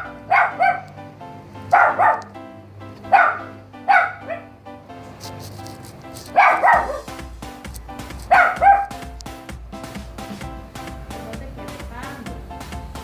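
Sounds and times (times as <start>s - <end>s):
dog barking: 0.0s - 0.9s, 1.7s - 2.3s, 3.1s - 4.5s, 6.3s - 7.1s, 8.3s - 9.0s
background music with held tones: 0.0s - 13.0s.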